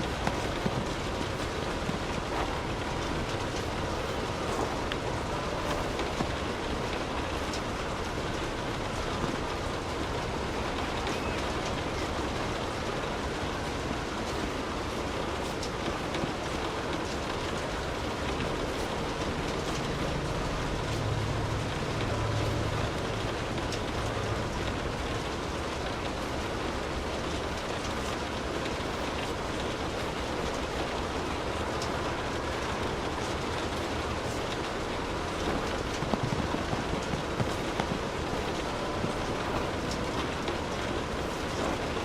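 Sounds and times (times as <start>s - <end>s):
steady rain falling: 0.0s - 42.0s.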